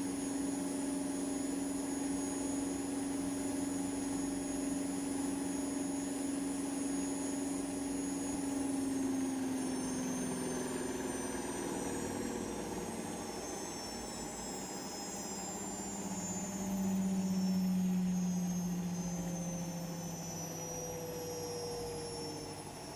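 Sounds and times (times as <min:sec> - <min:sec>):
washing machine spinning: 0:08.3 - 0:22.9.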